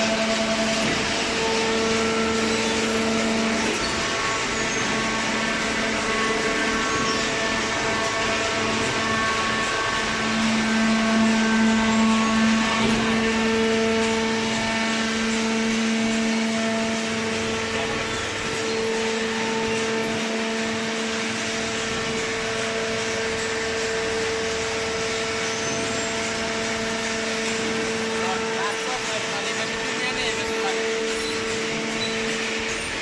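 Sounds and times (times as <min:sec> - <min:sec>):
hydraulic machine humming: 0:00.0 - 0:33.0.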